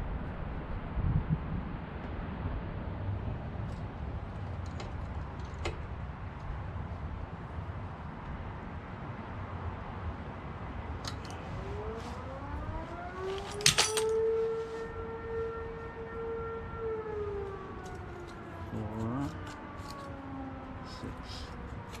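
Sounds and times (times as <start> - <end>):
siren wailing: 10.8 - 22.0.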